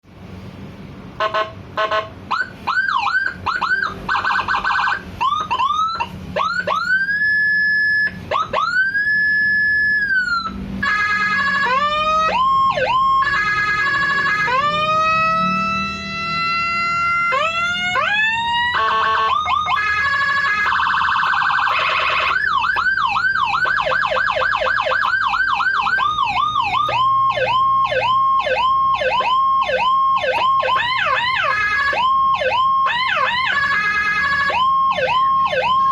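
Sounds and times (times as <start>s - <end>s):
electronic siren tones: 1.3s - 35.9s
siren wails: 1.3s - 35.9s
siren yelps: 1.3s - 35.9s
short siren beeps: 6.7s - 8.2s, 23.6s - 35.9s.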